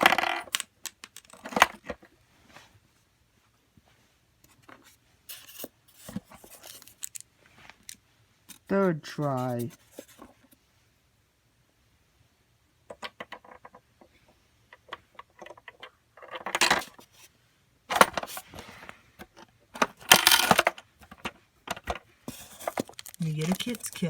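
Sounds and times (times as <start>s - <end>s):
small plastic clicks and rattles: 0.1s - 2.0s, 19.3s - 24.0s
plastic mechanism clattering: 19.2s - 24.0s.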